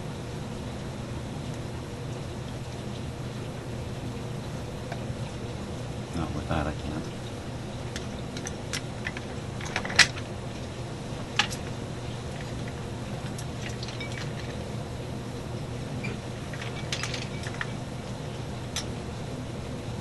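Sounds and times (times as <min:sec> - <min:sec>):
metal hand tools clinking: 0:16.0 - 0:17.8.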